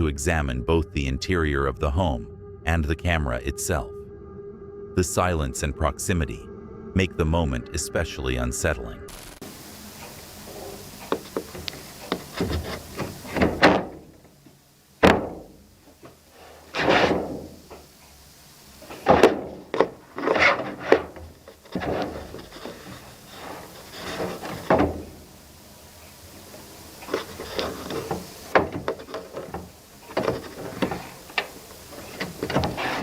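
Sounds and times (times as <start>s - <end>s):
knocks and rattles on wood: 11.1s - 14.3s, 15.0s - 17.8s, 18.9s - 23.0s, 23.6s - 25.2s, 27.1s - 33.0s.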